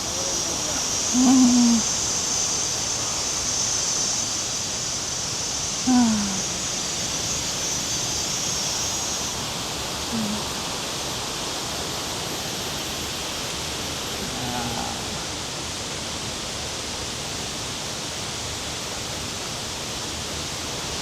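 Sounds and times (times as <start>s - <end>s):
short vocal sound: 1.1s - 1.9s, 5.8s - 6.7s, 10.1s - 10.5s, 14.2s - 15.4s.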